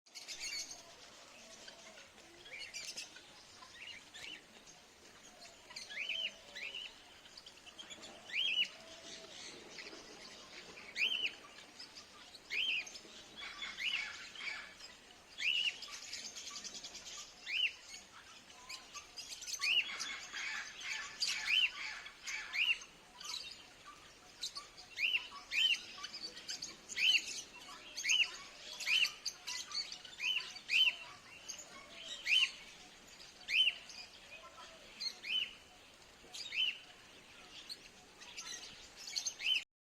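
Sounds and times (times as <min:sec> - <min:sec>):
bird chirping: 0:00.1 - 0:39.7
birds twittering faintly: 0:00.1 - 0:39.7.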